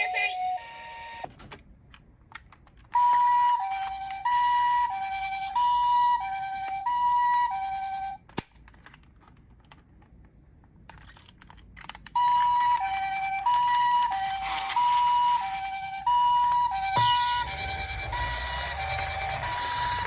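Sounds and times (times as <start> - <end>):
two-tone ambulance siren: 0.0 - 1.3, 3.0 - 8.2, 12.2 - 20.0.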